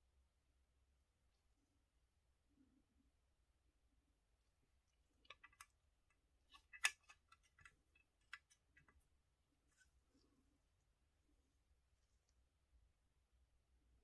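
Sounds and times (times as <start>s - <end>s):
small plastic parts clicking: 5.2s - 5.8s, 6.5s - 9.0s.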